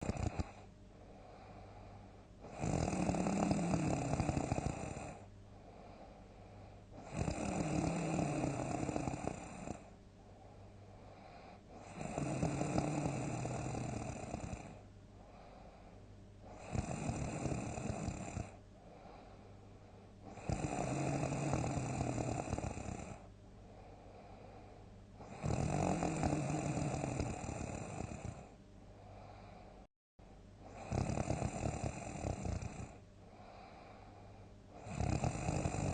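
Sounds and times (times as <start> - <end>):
person snoring loudly: 0.0 - 0.6, 2.4 - 5.2, 7.0 - 9.9, 11.2 - 14.8, 16.5 - 18.6, 20.3 - 23.3, 25.2 - 28.5, 30.7 - 33.7, 34.8 - 35.9
quiet breathing: 0.0 - 35.9.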